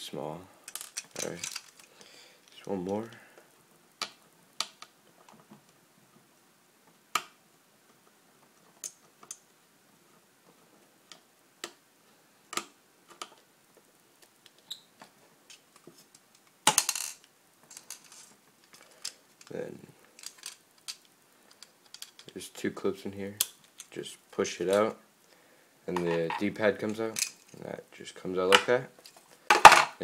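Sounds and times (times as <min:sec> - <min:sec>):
plastic parts clattering: 0:00.7 - 0:03.2, 0:15.5 - 0:22.4, 0:25.9 - 0:27.6, 0:28.5 - 0:30.0.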